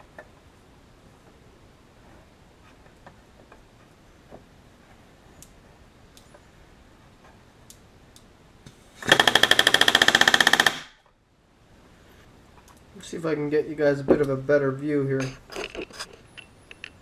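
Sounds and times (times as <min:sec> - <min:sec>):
pneumatic rivet gun hammering: 0:09.0 - 0:11.0.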